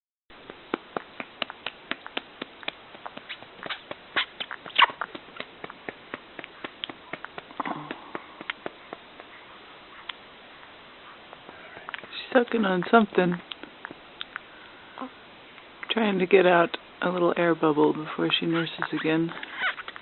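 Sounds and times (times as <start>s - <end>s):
soft pats on baby's back: 0.7s - 10.2s.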